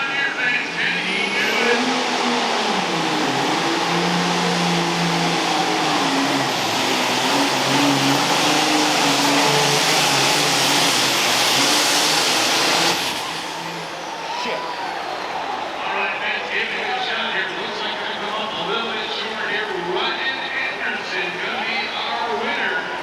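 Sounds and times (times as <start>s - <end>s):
diesel tractor engine under load: 1.1s - 14.2s.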